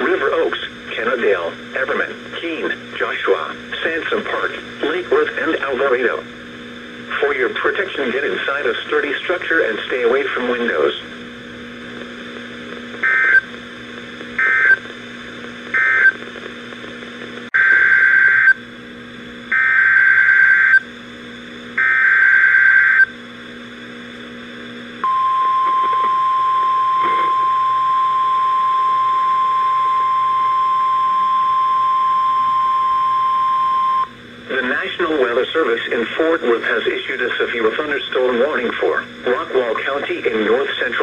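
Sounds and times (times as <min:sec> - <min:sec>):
screeching data signal bursts: 0:13.0 - 0:13.4, 0:14.4 - 0:14.8, 0:15.8 - 0:16.2, 0:19.5 - 0:20.9, 0:21.8 - 0:23.1
steady warning alarm tone: 0:13.0 - 0:13.5, 0:14.4 - 0:14.8, 0:15.8 - 0:16.2, 0:19.5 - 0:20.9, 0:21.8 - 0:23.1, 0:25.0 - 0:34.2.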